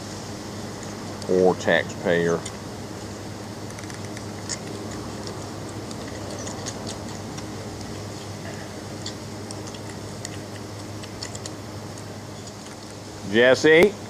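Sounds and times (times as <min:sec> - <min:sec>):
steady low hum: 0:00.0 - 0:14.0
puppies nursing clicks: 0:03.6 - 0:08.0, 0:08.9 - 0:13.0.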